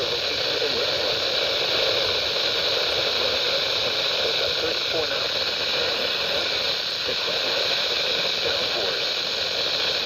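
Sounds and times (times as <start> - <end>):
radio static hiss: 0.0 - 10.0
garbled broadcast voice: 4.3 - 5.3.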